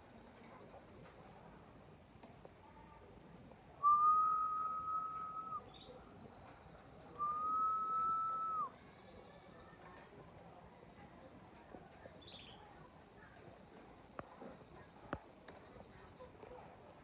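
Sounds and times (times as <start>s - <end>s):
long steady whistled notes: 3.8s - 5.8s, 7.2s - 8.7s.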